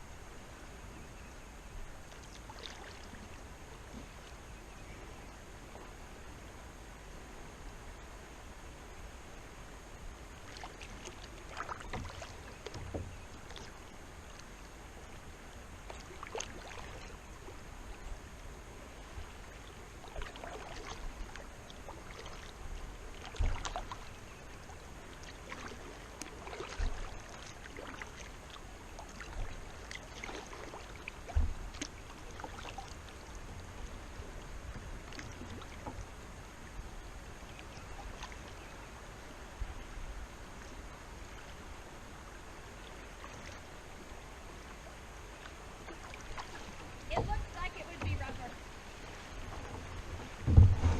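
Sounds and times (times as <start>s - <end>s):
flowing river water: 0.0s - 50.9s
paddle strokes splashing: 1.9s - 4.4s, 10.2s - 50.9s
low thumps: 47.0s - 48.4s, 49.5s - 50.9s.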